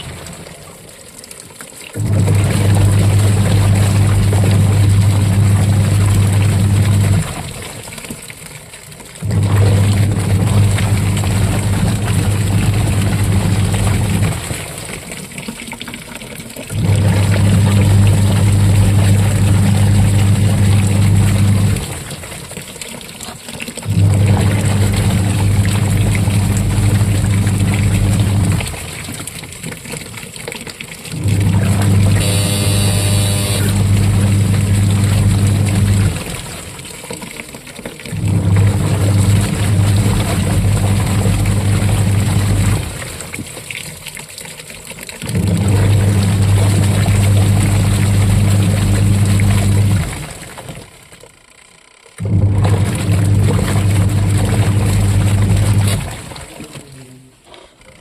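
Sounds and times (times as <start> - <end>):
washing machine motor humming: 0.0 - 0.6, 2.0 - 8.5, 9.1 - 15.6, 16.6 - 44.0, 44.9 - 58.0
water sloshing: 0.0 - 51.3, 52.4 - 58.0
high-pitched tone: 32.2 - 33.8.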